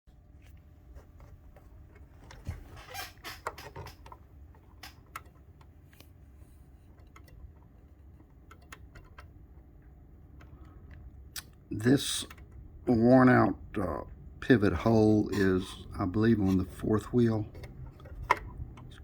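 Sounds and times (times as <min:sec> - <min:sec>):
clock movement clicks and scrapes: 0:15.1 - 0:19.0.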